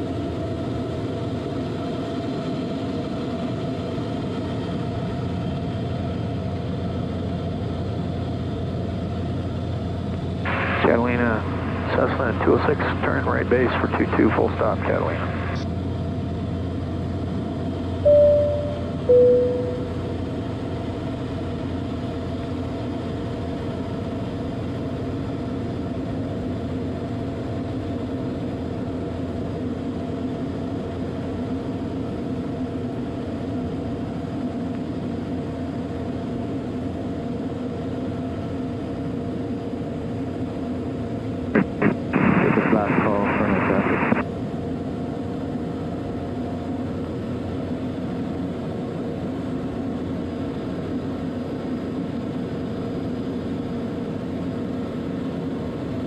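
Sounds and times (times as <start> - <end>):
aircraft cabin engine drone: 0.0 - 56.0
short loud tones: 18.0 - 20.0.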